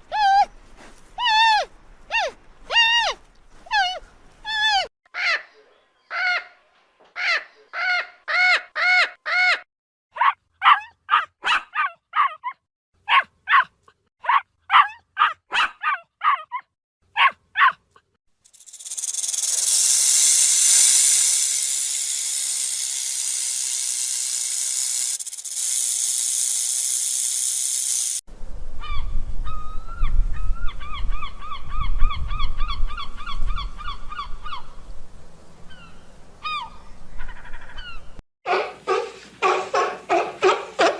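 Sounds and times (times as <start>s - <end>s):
rapid trilled bird calls: 18.5s - 21.5s
long hissing noise: 18.5s - 28.2s.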